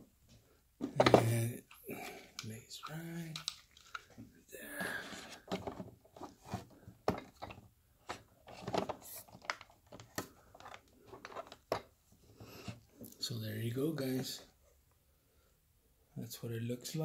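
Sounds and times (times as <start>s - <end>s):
plastic toy parts clicking: 1.7s - 4.1s.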